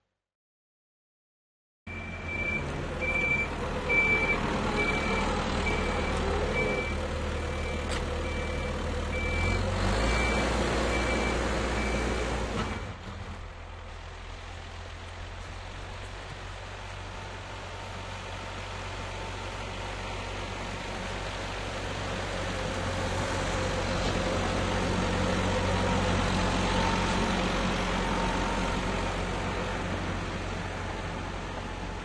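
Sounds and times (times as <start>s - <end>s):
reversing alarm beeping: 1.9s - 12.3s
tractor engine running: 2.0s - 32.0s.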